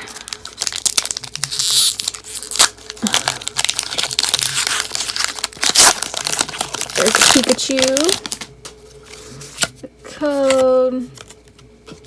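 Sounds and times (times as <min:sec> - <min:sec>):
foil wrapper crinkling and tearing: 0:00.0 - 0:08.5.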